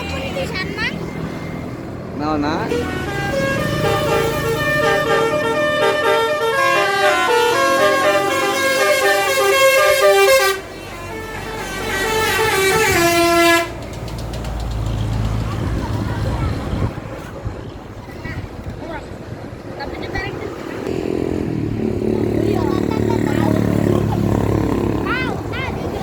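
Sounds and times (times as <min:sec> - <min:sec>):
bus horn playing melody: 0:02.7 - 0:13.8.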